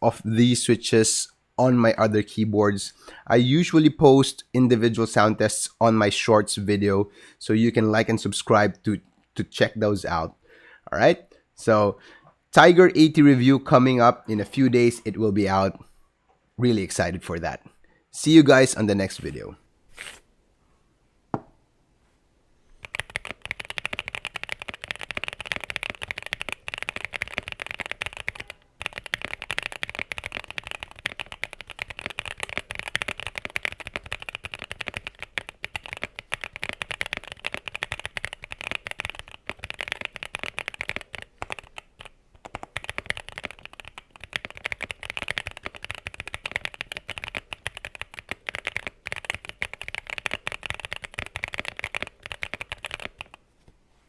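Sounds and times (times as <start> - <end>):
mechanical keyboard typing: 22.8 - 53.4.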